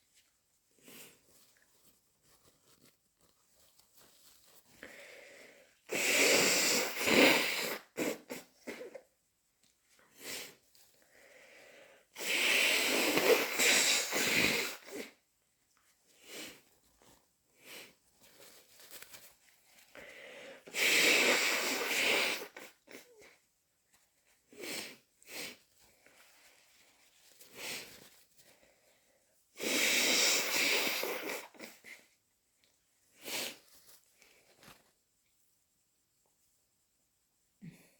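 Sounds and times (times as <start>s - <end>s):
person sneezing: 5.9s - 9.0s.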